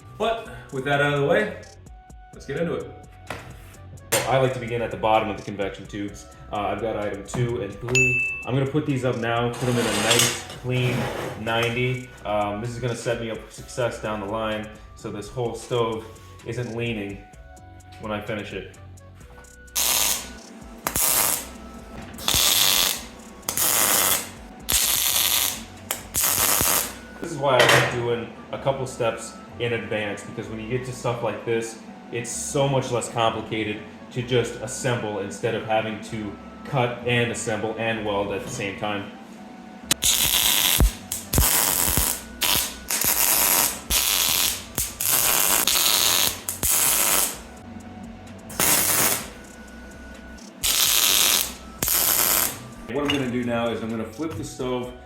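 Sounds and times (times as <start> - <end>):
welding arc crackling: 19.7 - 21.6, 22.2 - 27.0, 39.9 - 47.6, 48.5 - 49.4, 50.5 - 52.7.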